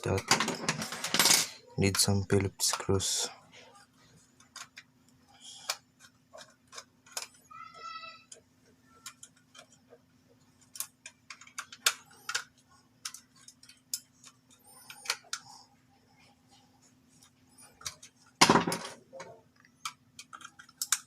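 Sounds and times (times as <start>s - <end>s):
parts clattering: 0.0s - 3.2s, 17.2s - 21.0s
screwdriver and parts clicking: 5.7s - 7.4s, 10.6s - 15.6s, 19.8s - 21.0s.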